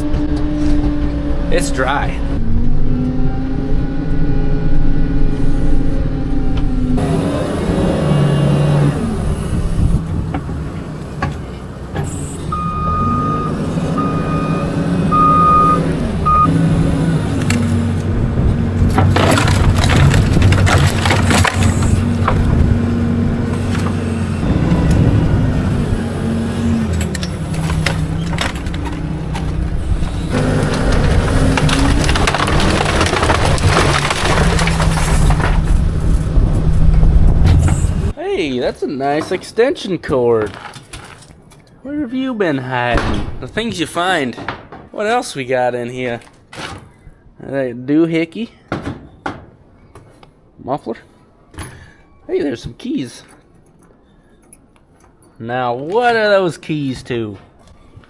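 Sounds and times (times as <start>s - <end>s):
farm machine engine running: 6.6s - 38.1s
knocks and clatter: 9.7s - 12.2s, 17.3s - 38.1s, 42.9s - 45.1s, 48.7s - 50.2s
short electronic beeps: 12.5s - 16.5s.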